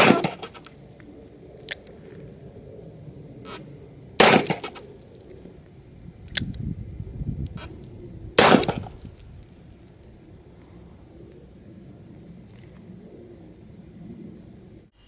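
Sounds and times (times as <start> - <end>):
handgun shots: 4.2 - 4.8, 8.4 - 8.9.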